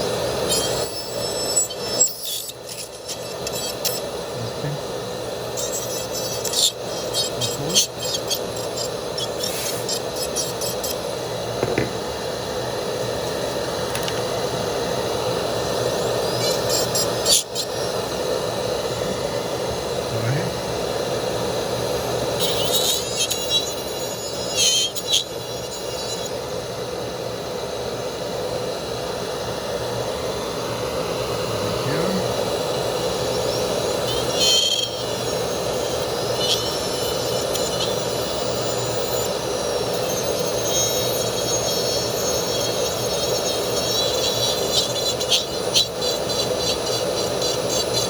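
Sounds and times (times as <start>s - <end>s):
dental handpiece grinding: 0.0s - 12.0s, 15.5s - 19.4s, 22.2s - 26.5s, 31.7s - 48.0s.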